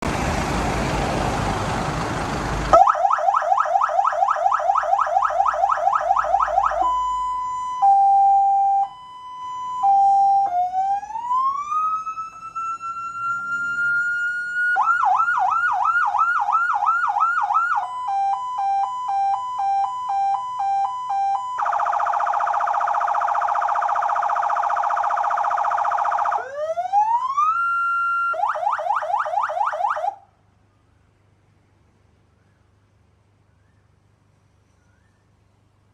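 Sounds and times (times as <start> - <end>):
electronic siren yelping and wailing: 2.7 - 30.2
siren horn blast: 5.3 - 15.6.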